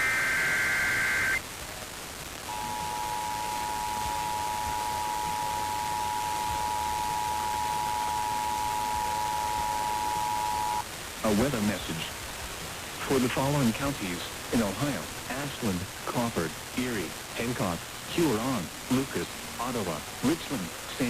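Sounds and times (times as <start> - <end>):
steady hiss: 0.0 - 21.0
two-tone alert signal: 2.5 - 10.8.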